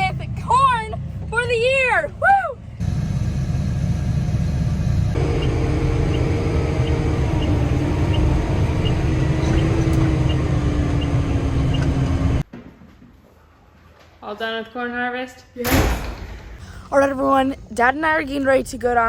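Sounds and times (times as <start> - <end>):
combine harvester drone: 2.6 - 12.4
machinery whine: 2.7 - 12.4.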